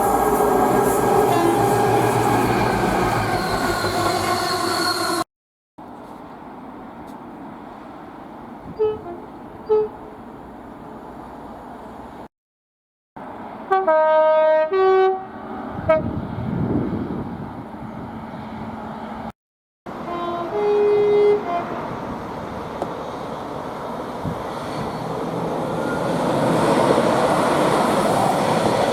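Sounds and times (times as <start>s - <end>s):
train horn: 0.0s - 5.2s, 8.8s - 10.1s, 13.7s - 16.2s, 19.9s - 22.1s
train rumble: 0.0s - 5.2s, 19.9s - 28.9s.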